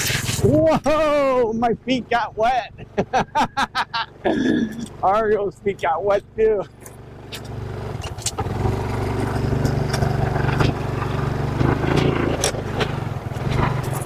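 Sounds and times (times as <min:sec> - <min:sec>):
motorcycle engine running: 0:00.0 - 0:14.0
knocks and rattles from bike: 0:06.7 - 0:14.0.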